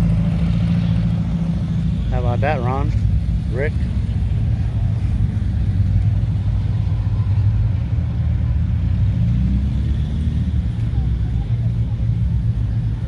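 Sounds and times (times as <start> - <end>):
car engine idling: 0.0 - 13.0.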